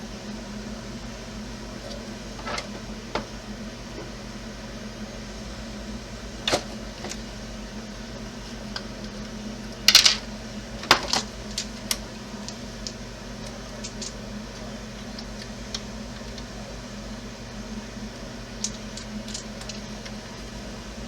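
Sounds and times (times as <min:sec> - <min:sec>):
steady low hum: 0:00.0 - 0:21.0
light clicks and taps of small parts: 0:11.1 - 0:14.2.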